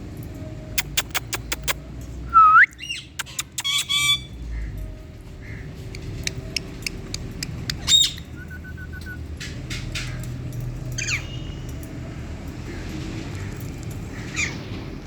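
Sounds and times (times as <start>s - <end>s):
low background hum: 0.0s - 15.0s
faint quick chirps: 0.8s - 1.8s
parakeet squawking: 0.8s - 1.8s, 2.9s - 4.3s, 6.3s - 8.3s.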